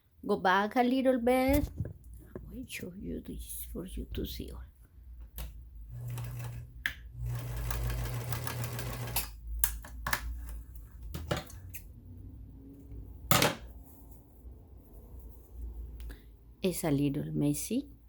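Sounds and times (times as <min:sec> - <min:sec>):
sewing machine running: 0:05.9 - 0:09.3.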